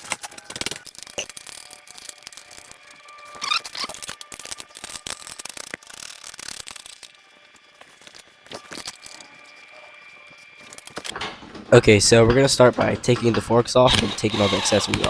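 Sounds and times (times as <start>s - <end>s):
tools clicking and clattering: 0.0s - 9.7s, 10.4s - 11.4s.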